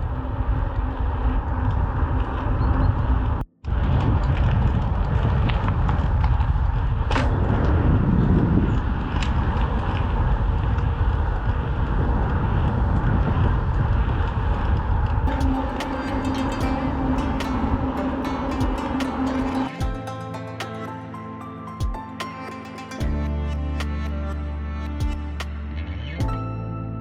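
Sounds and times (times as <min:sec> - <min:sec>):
bike tyres rolling on asphalt: 0:00.0 - 0:15.3
wind buffeting microphone: 0:00.0 - 0:19.8.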